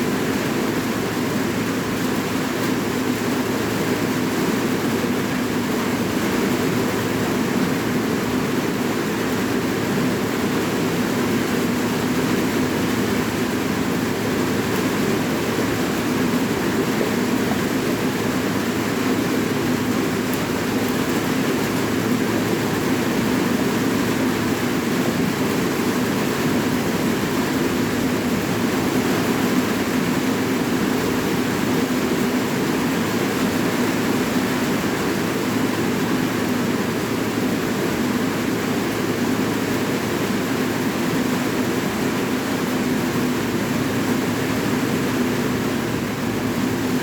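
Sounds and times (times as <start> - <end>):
steady rain: 0.0 - 47.0.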